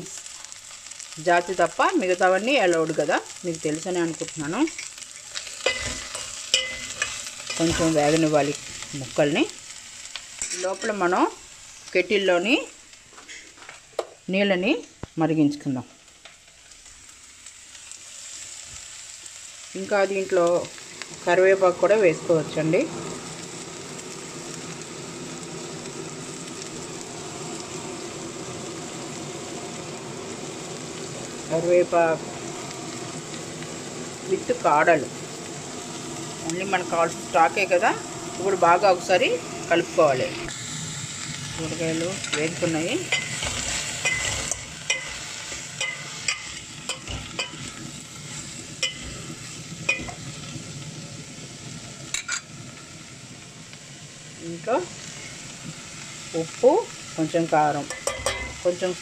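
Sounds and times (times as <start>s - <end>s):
vegetables frying in oil: 0.0s - 59.0s
spoon scraping a pan: 4.7s - 7.9s, 10.4s - 11.0s, 42.2s - 47.8s, 48.8s - 49.3s, 57.9s - 58.7s.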